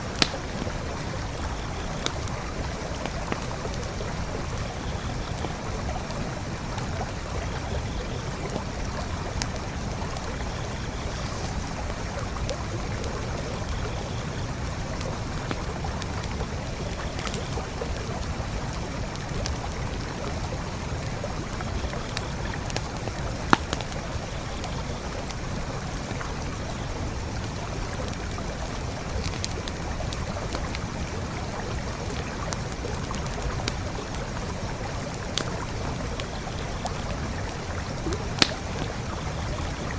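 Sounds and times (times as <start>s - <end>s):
campfire crackling and popping: 0.0s - 39.9s
creek flowing: 0.0s - 39.9s.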